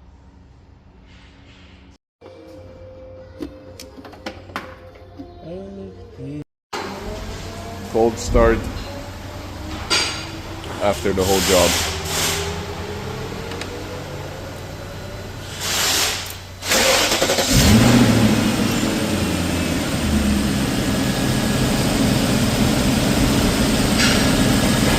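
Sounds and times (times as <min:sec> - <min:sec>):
car engine starting and idling: 0:06.7 - 0:24.9.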